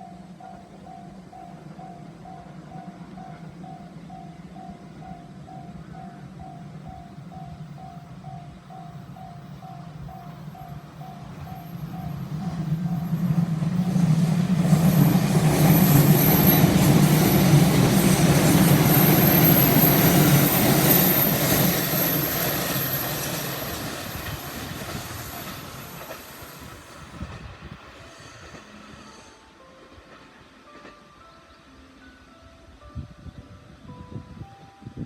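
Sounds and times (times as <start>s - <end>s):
level-crossing bell dinging: 0.0s - 14.1s, 14.8s - 26.1s
electric train passing: 0.0s - 35.0s.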